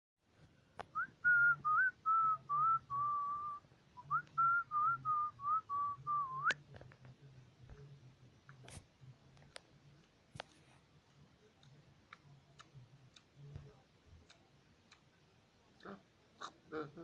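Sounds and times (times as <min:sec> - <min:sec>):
person whistling a tune: 0:01.0 - 0:06.6.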